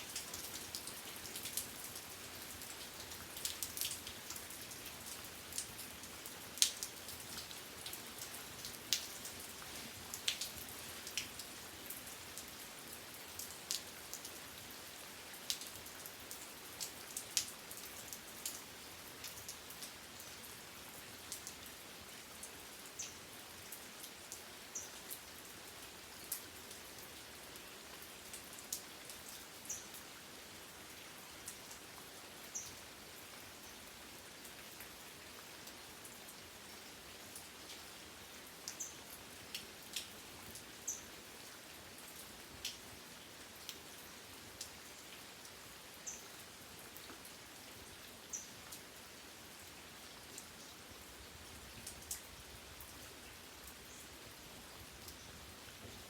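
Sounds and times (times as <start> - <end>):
steady rain: 0.0 - 56.0
raindrops tapping on a surface: 6.6 - 11.4.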